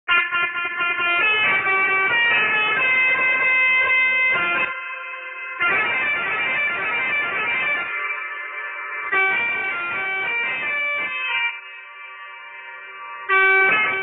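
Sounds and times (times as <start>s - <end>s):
melodica playing: 9.0s - 14.0s.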